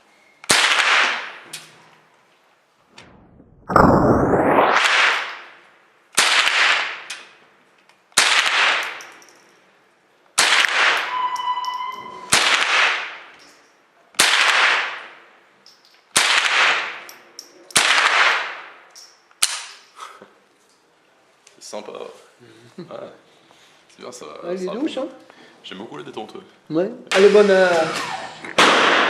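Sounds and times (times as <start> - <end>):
rifle shots echoing indoors: 0.5 - 1.5, 6.2 - 7.1, 8.2 - 9.1, 10.4 - 13.4, 14.2 - 15.1, 16.1 - 17.0, 17.7 - 18.7, 28.6 - 29.0
short steady beep: 11.1 - 12.3.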